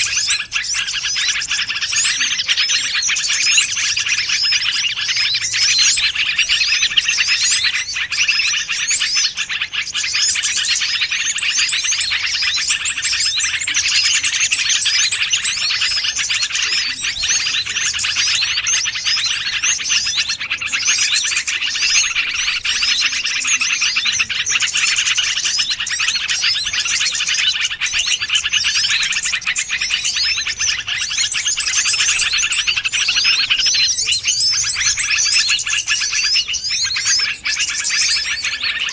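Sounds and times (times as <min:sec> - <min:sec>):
small birds twittering: 0:00.0 - 0:38.9.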